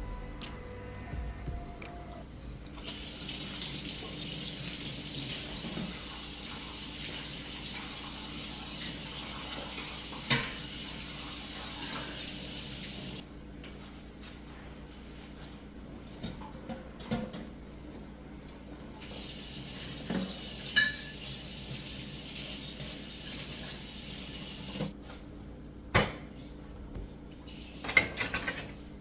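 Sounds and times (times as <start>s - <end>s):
tap water running into sink: 2.8s - 13.2s, 19.0s - 24.9s.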